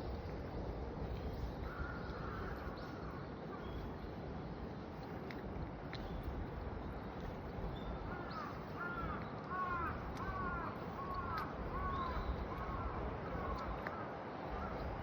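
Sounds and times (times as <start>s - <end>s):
outdoor background noise: 0.0s - 15.0s
crow cawing: 8.4s - 12.9s.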